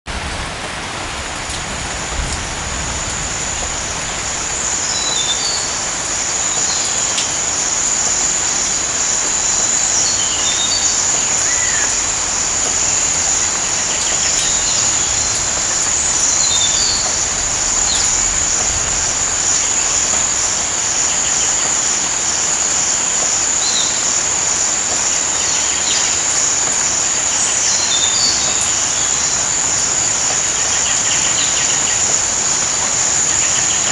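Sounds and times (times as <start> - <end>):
steady rain falling: 0.1 - 33.9
insect trilling: 9.4 - 21.9
bird chirps: 10.0 - 12.1, 12.9 - 18.7.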